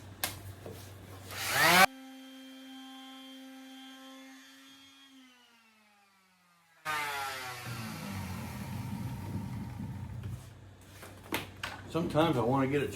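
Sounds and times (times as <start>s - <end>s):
power sander motor whine: 1.3s - 10.4s.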